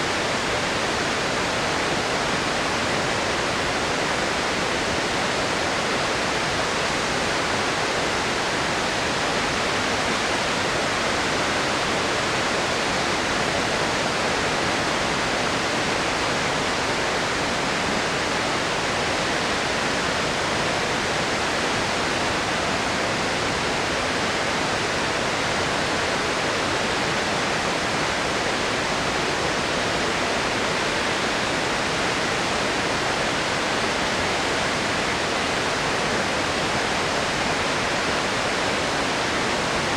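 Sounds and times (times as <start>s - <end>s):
water rushing from dam: 0.0s - 39.9s.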